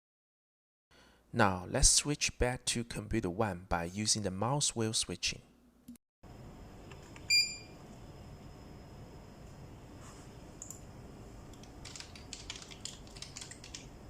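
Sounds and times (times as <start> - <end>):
computer keyboard typing: 11.5 - 14.0.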